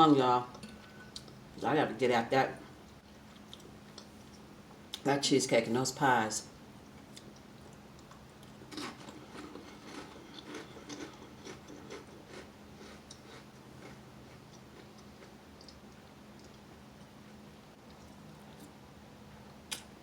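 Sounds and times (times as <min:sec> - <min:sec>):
faint steady hum: 0:00.0 - 0:20.0
wet chewing mouth noises: 0:06.9 - 0:16.6.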